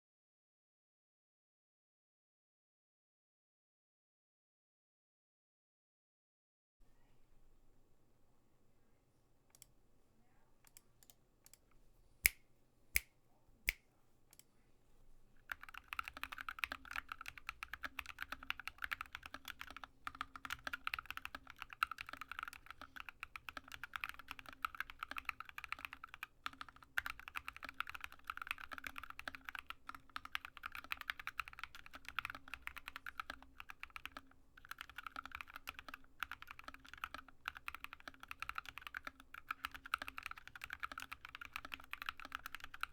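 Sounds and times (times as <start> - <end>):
mechanical keyboard typing: 15.5 - 42.9.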